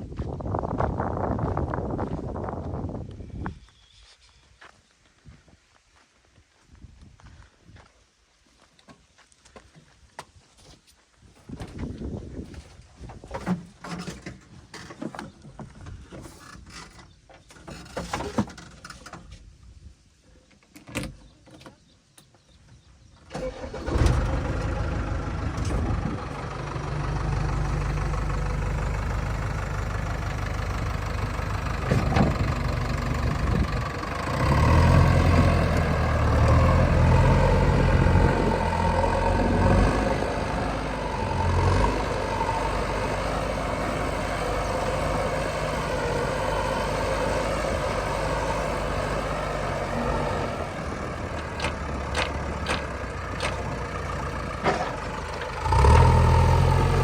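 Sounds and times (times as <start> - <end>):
heavy diesel engine running: 23.4 - 57.0.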